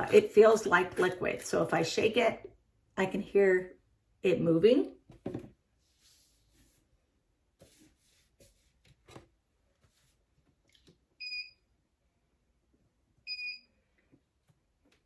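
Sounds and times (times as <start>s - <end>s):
handling noise and knocks: 5.1s - 5.6s.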